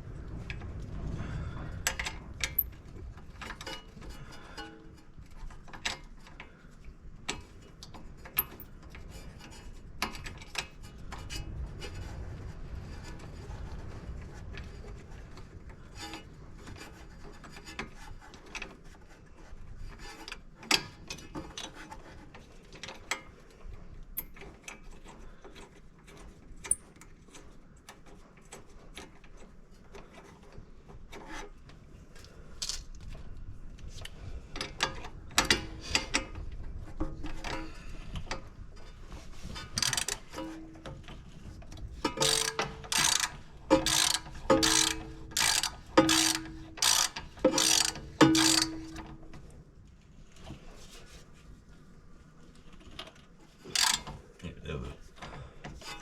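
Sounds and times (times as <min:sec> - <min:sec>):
sharp clicks and knocks of tools: 0:07.3 - 0:09.0, 0:32.6 - 0:33.2, 0:39.6 - 0:41.2, 0:41.8 - 0:49.5, 0:52.8 - 0:54.2.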